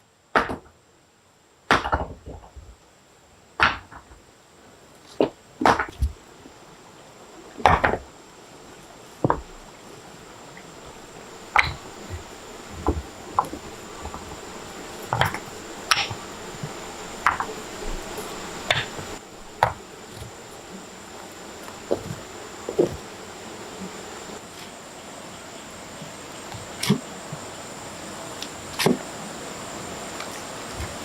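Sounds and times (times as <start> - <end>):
high-pitched insect drone: 9.2 - 31.0.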